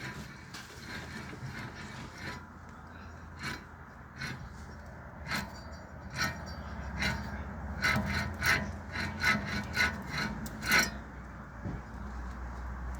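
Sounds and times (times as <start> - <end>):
wheel bearing grinding: 0.0 - 12.9.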